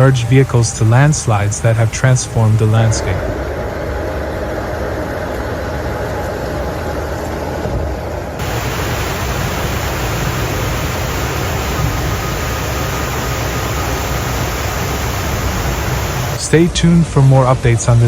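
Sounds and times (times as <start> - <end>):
steady rushing noise: 8.4 - 16.7.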